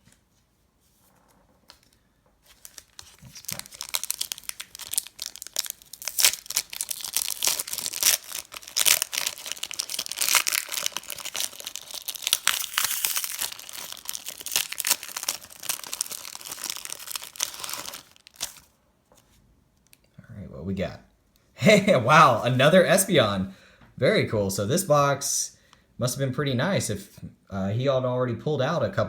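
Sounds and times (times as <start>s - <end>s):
wrapper crinkling and tearing: 1.7s - 18.8s.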